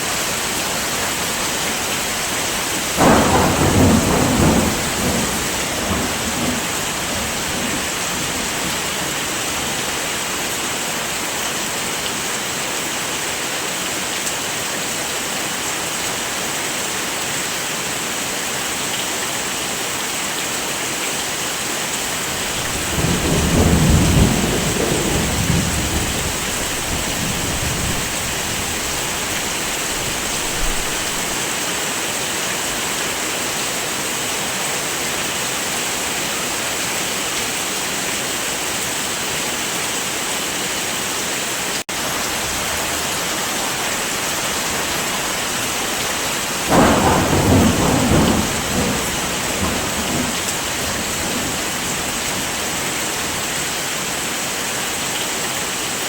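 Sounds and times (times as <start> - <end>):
heavy rain falling: 0.0 - 56.0
thunder rumbling: 2.0 - 9.1, 22.3 - 31.4, 42.4 - 52.8.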